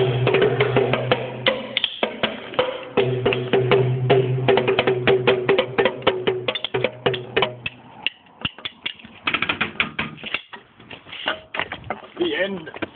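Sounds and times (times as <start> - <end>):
small drums struck: 0.0 - 10.6.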